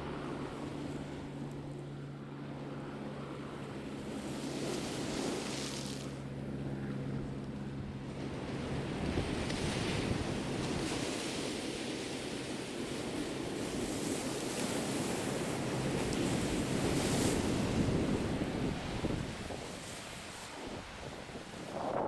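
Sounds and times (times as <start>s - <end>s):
low steady hum: 0.0s - 10.6s
sea waves washing onto beach: 3.0s - 22.0s
wind buffeting microphone: 6.3s - 22.0s.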